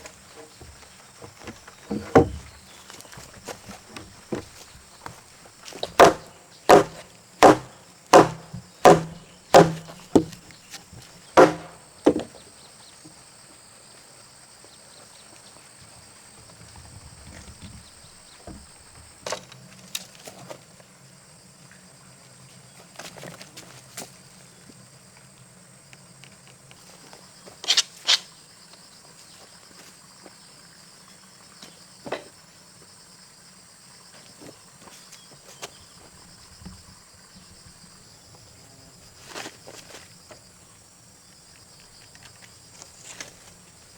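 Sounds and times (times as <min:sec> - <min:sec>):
insects buzzing: 0:00.0 - 0:43.9
tool striking timber: 0:01.9 - 0:02.5, 0:05.8 - 0:10.4, 0:11.4 - 0:12.4.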